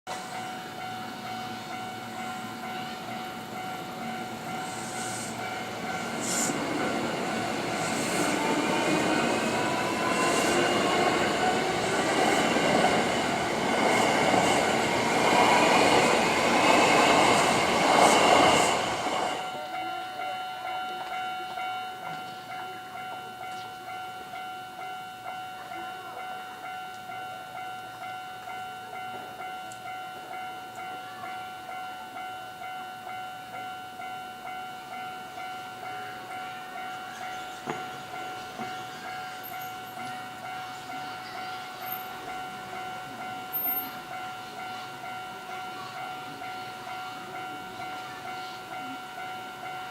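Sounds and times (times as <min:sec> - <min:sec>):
electric train passing: 0:00.1 - 0:49.9
railroad crossing bell ringing: 0:00.1 - 0:49.9
train wheel clacks: 0:00.4 - 0:20.1, 0:35.4 - 0:49.9
train motor whine: 0:03.1 - 0:19.5.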